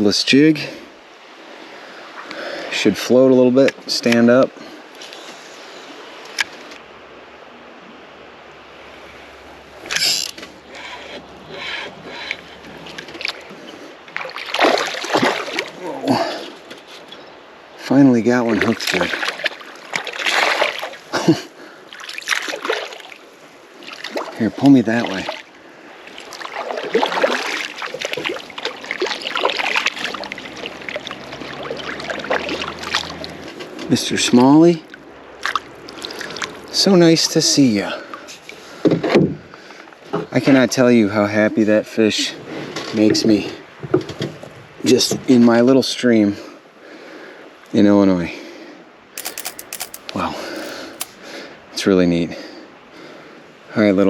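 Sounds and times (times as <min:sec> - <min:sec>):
creek water rushing: 0:04.0 - 0:16.6, 0:17.5 - 0:33.8
water splashing: 0:12.3 - 0:15.8, 0:18.6 - 0:21.0, 0:26.1 - 0:33.4.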